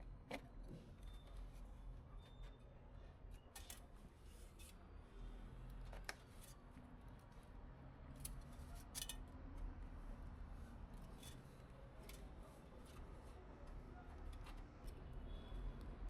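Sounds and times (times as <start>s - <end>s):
faint clicks of handling parts: 3.3s - 4.8s, 5.6s - 7.5s, 8.1s - 9.3s, 10.9s - 15.1s.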